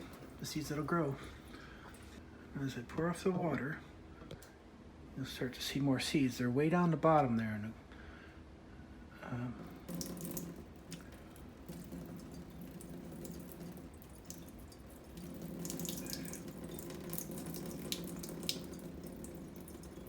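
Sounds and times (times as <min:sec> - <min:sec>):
water pouring into sink: 0:09.7 - 0:20.0.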